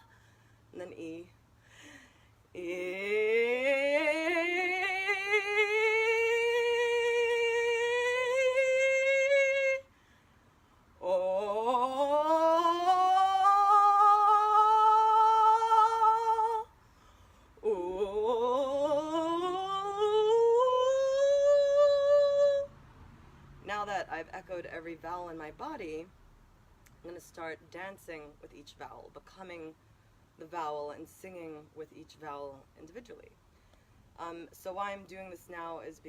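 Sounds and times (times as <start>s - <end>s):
woman singing sliding vowel tones: 2.5s - 9.9s, 11.0s - 16.8s, 17.6s - 22.7s.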